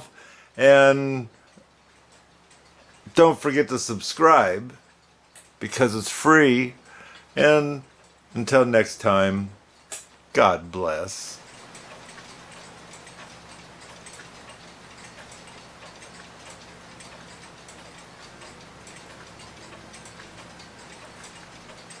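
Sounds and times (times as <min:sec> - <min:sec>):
mantel clock ticking: 0:00.0 - 0:22.0.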